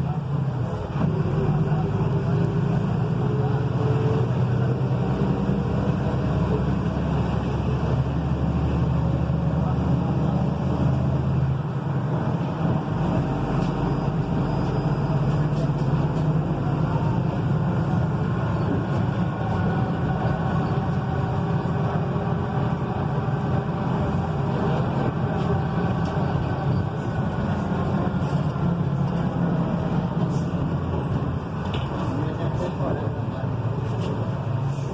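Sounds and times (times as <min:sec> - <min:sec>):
diesel truck engine drone: 0:00.0 - 0:34.9.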